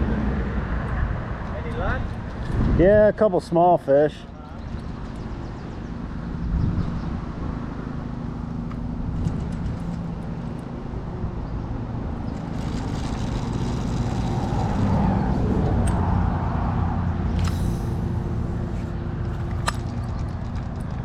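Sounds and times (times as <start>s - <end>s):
motor engine running: 12.0s - 16.0s, 17.3s - 21.0s.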